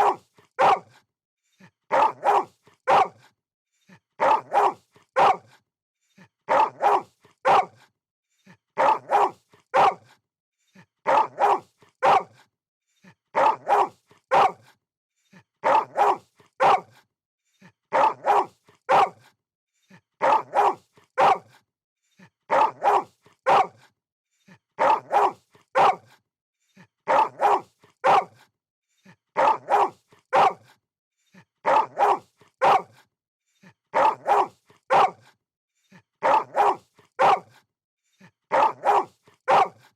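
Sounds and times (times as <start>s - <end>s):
dog barking: 0.0s - 1.0s, 1.9s - 3.3s, 4.2s - 5.6s, 6.5s - 7.8s, 8.8s - 10.2s, 11.0s - 12.5s, 13.3s - 14.8s, 15.6s - 17.0s, 17.9s - 19.3s, 20.2s - 21.6s, 22.5s - 23.9s, 24.8s - 26.2s, 27.1s - 28.5s, 29.4s - 30.7s, 31.6s - 33.0s, 33.9s - 35.4s, 36.2s - 37.6s, 38.5s - 39.9s.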